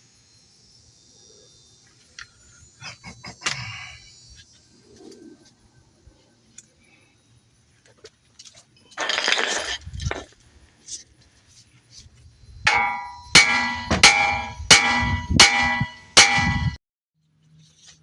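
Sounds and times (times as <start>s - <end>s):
hammer ringing on steel: 12.7s - 16.8s.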